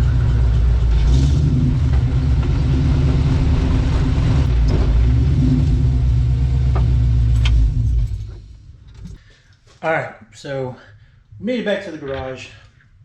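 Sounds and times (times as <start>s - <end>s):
car engine deep rumble: 0.0s - 9.2s.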